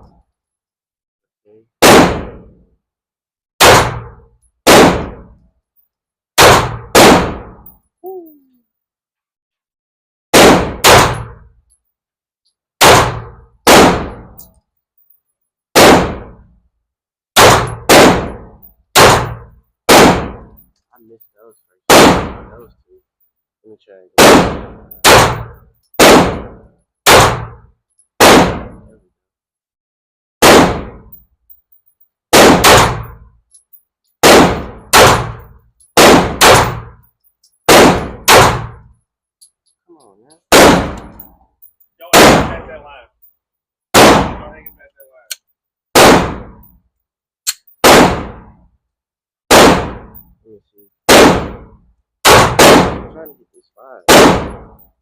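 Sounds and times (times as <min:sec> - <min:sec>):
pistol shots with echo: 0:01.8 - 0:02.6, 0:03.6 - 0:05.4, 0:06.4 - 0:07.6, 0:10.3 - 0:11.5, 0:12.8 - 0:14.4, 0:15.8 - 0:16.4, 0:17.4 - 0:20.6, 0:21.9 - 0:22.7, 0:24.2 - 0:29.0, 0:30.4 - 0:31.2, 0:32.3 - 0:33.2, 0:34.2 - 0:37.0, 0:37.7 - 0:38.9, 0:40.5 - 0:41.3, 0:42.1 - 0:42.9, 0:43.9 - 0:44.7, 0:45.9 - 0:46.7, 0:47.8 - 0:48.6, 0:49.5 - 0:50.2, 0:51.1 - 0:53.3, 0:54.1 - 0:54.8.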